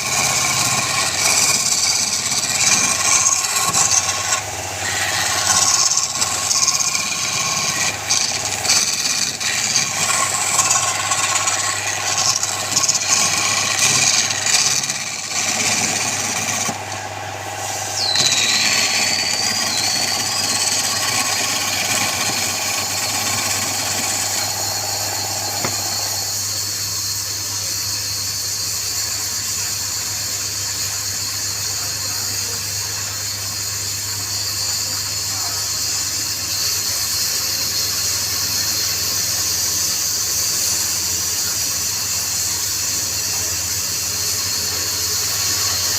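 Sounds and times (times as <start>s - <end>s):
turning tool scraping wood: 0.0s - 26.6s, 38.6s - 45.9s
high squeal: 0.0s - 45.9s
wood lathe humming: 0.0s - 45.9s.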